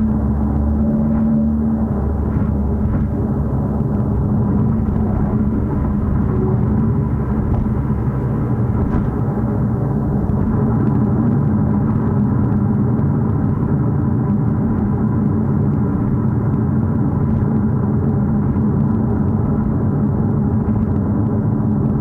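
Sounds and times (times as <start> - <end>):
car engine droning: 0.0 - 12.2.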